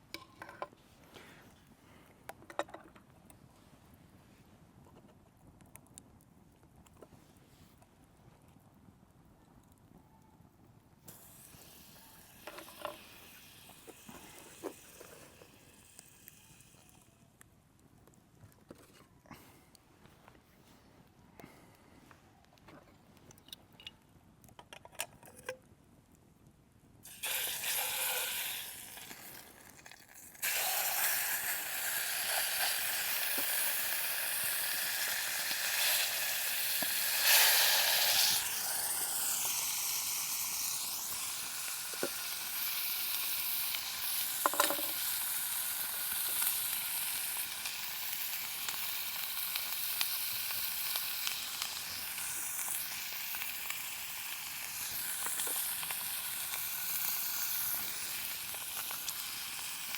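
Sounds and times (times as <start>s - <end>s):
steak sizzling in a pan: 11.1s - 16.9s, 27.0s - 59.9s.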